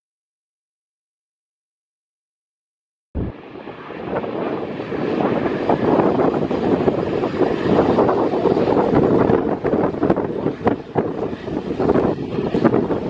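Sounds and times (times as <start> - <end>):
jet engines rushing: 3.2 - 13.0
wind buffeting microphone: 3.2 - 13.0.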